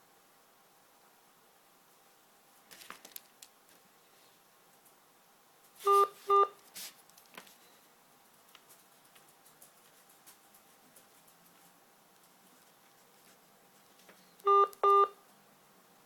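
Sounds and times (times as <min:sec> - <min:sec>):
electronic telephone beeps: 0:05.8 - 0:06.6, 0:14.4 - 0:15.2
quiet open phone line: 0:05.8 - 0:06.6, 0:10.6 - 0:16.0.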